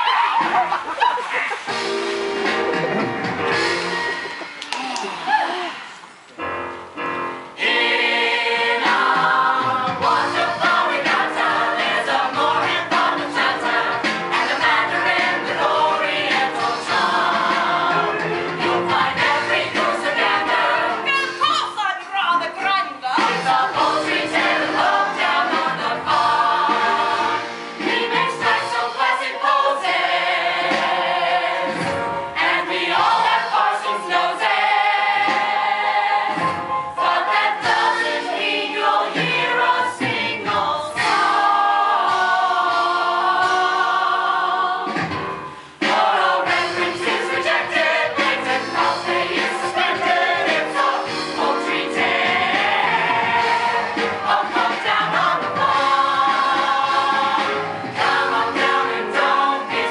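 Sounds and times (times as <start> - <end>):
musical backing: 0.0 - 59.9
chorus singing show tune: 7.4 - 59.9.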